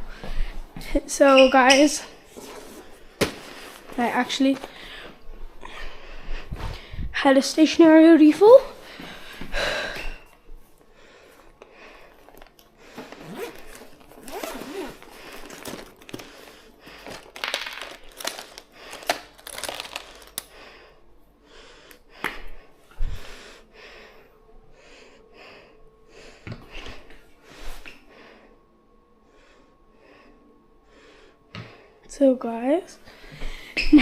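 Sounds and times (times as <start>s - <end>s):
stationery items rustling: 2.1s - 5.2s, 11.3s - 20.5s.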